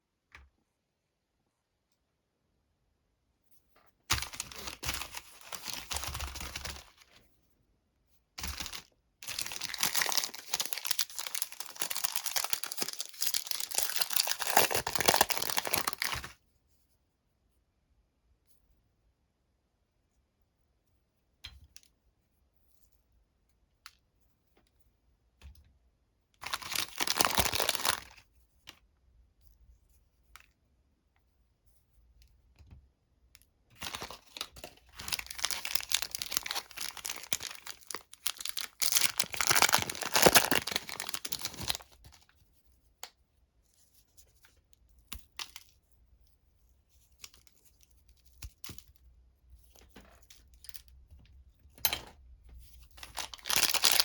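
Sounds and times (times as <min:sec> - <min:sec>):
plastic wrapper tearing and crinkling: 0:04.1 - 0:07.1, 0:08.4 - 0:16.4, 0:26.4 - 0:28.2, 0:33.8 - 0:42.2, 0:53.0 - 0:54.0.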